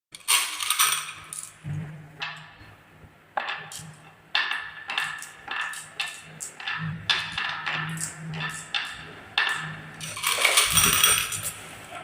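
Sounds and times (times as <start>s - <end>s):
marbles clattering on wooden run: 0.2s - 1.6s, 3.4s - 11.6s.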